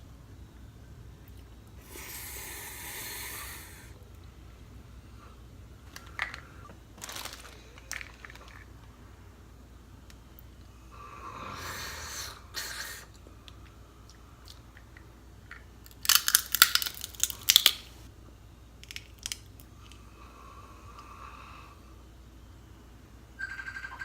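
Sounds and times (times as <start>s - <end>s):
crab shells cracking: 15.5s - 17.9s, 18.8s - 20.0s
soft shell crunching: 15.5s - 18.0s, 18.8s - 20.0s.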